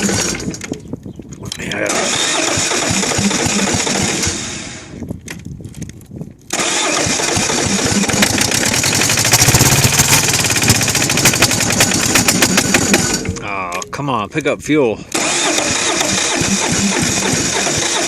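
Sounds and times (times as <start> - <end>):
diesel engine cranking on starter: 0.0 - 0.8, 1.7 - 5.0, 6.5 - 13.5, 15.1 - 18.0.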